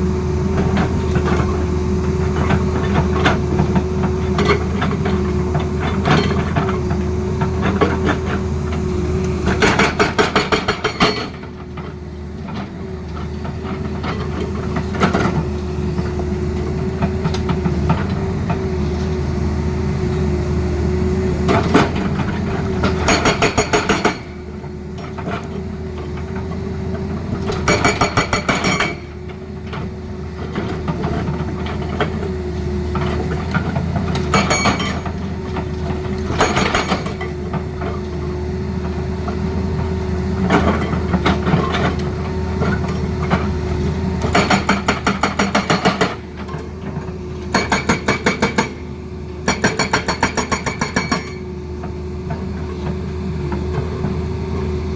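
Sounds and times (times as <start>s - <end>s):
diesel engine running: 0.0s - 23.1s
hydraulic breaker hammering: 44.3s - 46.3s, 47.5s - 51.4s.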